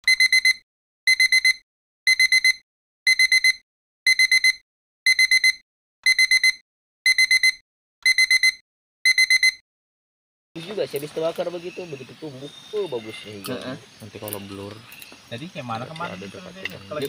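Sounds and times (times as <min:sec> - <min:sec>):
alarm clock beeping: 0:00.0 - 0:09.6.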